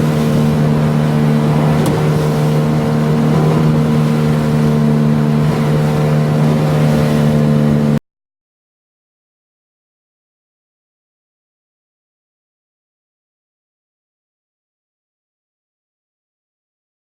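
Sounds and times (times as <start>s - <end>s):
outboard motor running: 0.0s - 8.0s.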